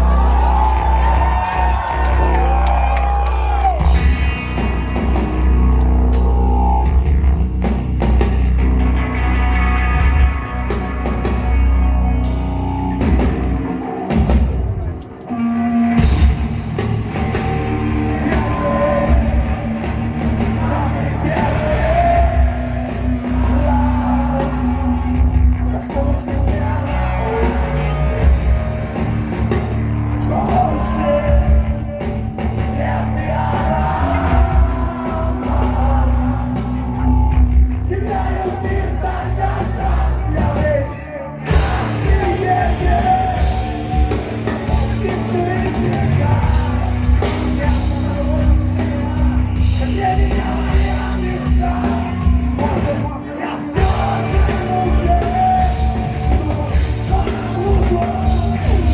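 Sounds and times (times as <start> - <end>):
rock band playing live: 0.0 - 58.9
person singing and yelling: 17.7 - 28.3, 30.2 - 58.9.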